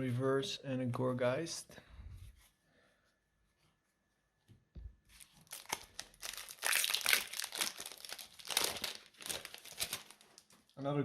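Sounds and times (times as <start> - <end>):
foil wrapper crinkling and tearing: 5.1 - 10.8.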